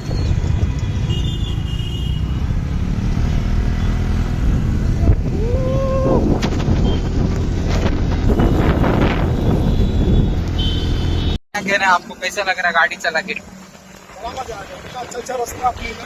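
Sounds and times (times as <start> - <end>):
wind and road rumble: 0.0 - 11.4
vehicle horn: 0.8 - 2.4, 8.2 - 11.4.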